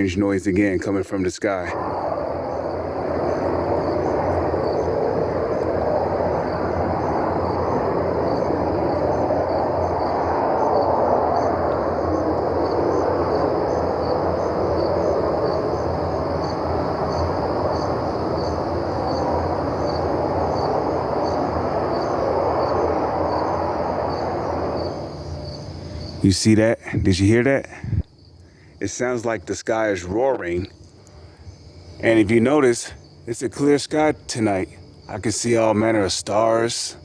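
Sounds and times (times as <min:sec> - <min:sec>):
crickets chirping: 0:00.0 - 0:37.0
deep roar from the sky: 0:01.5 - 0:26.2.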